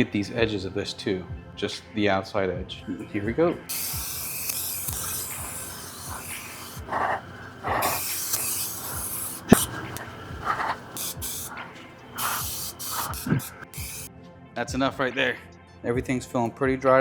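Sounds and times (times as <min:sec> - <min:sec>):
aerosol can spraying: 0:03.7 - 0:14.1.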